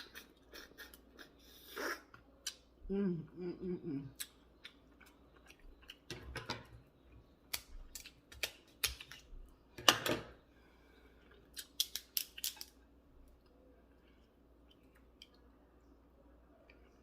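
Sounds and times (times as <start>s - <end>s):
crab shell cracking: 7.5s - 9.3s, 11.5s - 12.8s.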